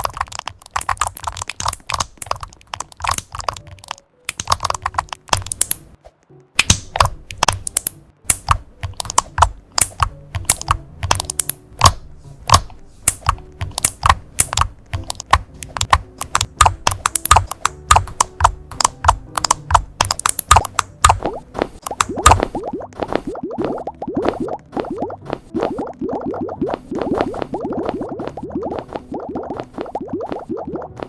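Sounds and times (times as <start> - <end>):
computer keyboard typing: 0.0 - 5.8, 6.6 - 22.6.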